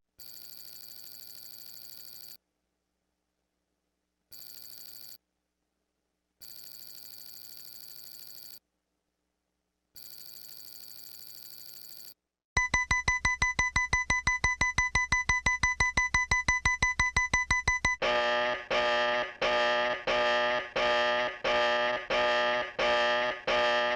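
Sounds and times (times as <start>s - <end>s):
electronic telephone ring: 0.2s - 2.4s, 4.4s - 5.2s, 10.0s - 23.9s
pulsing electronic ringtone: 12.6s - 23.9s
rapid electronic beeping: 12.6s - 23.9s.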